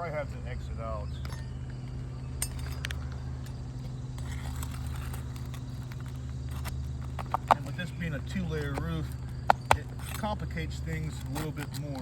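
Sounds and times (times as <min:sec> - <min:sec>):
low motor hum: 0:00.0 - 0:12.0.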